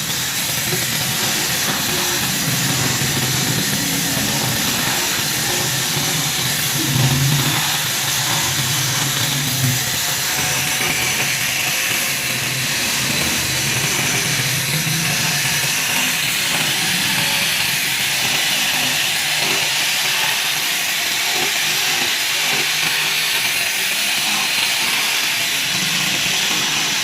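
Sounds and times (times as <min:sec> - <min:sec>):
steady hissing noise: 0:00.0 - 0:18.0
low hum: 0:00.6 - 0:10.3.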